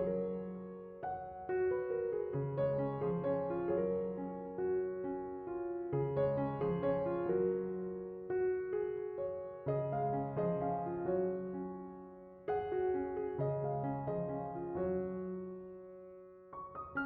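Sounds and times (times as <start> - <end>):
soft piano music: 0.0 - 17.0.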